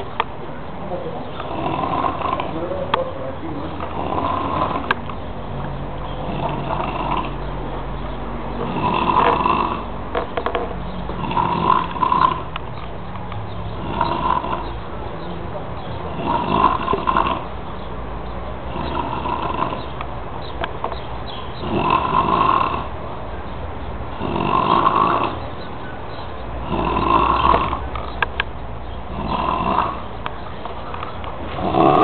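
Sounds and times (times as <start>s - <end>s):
person snoring loudly: 1.4s - 2.5s, 3.9s - 4.9s, 6.2s - 7.4s, 8.6s - 9.9s, 11.2s - 12.5s, 13.8s - 14.7s, 16.1s - 17.5s, 18.7s - 19.9s, 21.6s - 22.9s, 24.1s - 25.4s, 26.6s - 27.8s, 29.1s - 30.1s, 31.6s - 32.0s.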